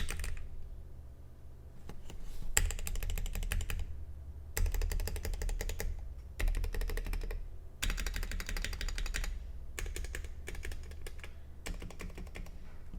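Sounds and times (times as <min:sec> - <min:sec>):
mechanical keyboard typing: 0:00.0 - 0:00.5, 0:02.6 - 0:03.9, 0:04.6 - 0:12.6.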